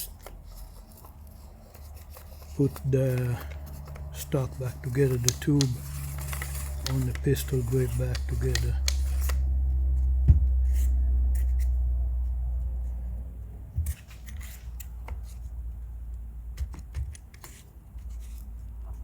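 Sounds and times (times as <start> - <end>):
gun parts clicking and scraping: 0.0 - 9.4
low rumble: 9.0 - 14.2.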